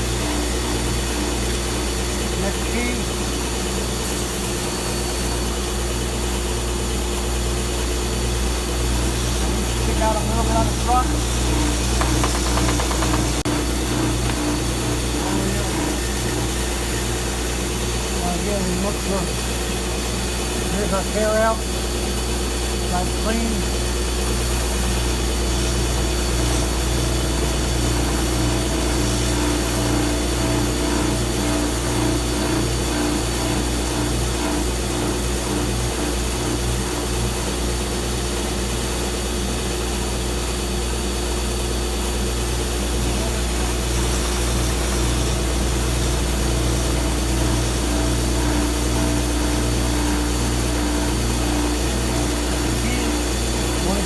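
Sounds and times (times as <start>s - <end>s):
sander motor humming: 8.4s - 21.6s, 23.2s - 37.6s, 42.4s - 54.0s.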